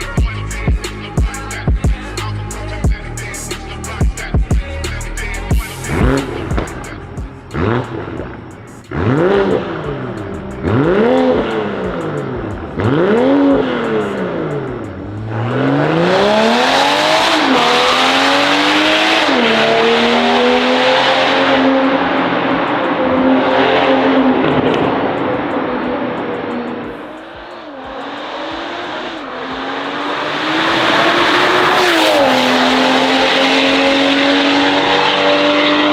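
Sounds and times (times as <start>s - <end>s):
car engine revving: 0.0s - 35.9s.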